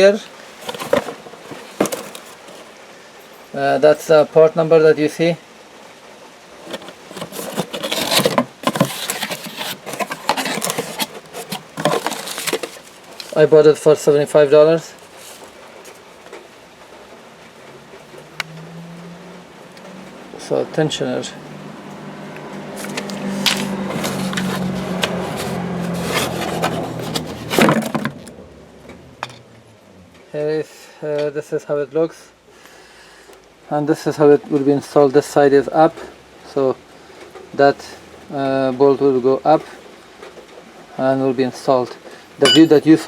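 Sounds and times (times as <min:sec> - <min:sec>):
handling clicks and rustling: 0:00.0 - 0:02.8, 0:06.6 - 0:13.6, 0:15.0 - 0:16.4, 0:22.8 - 0:29.4, 0:42.4 - 0:43.0.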